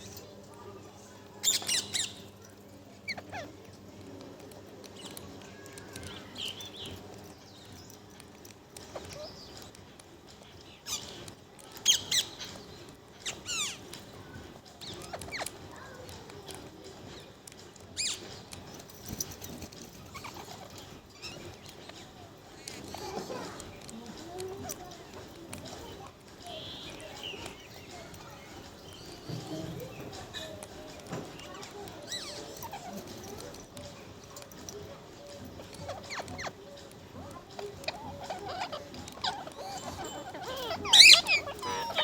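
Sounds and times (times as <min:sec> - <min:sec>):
parrot calling: 0:35.4 - 0:42.0.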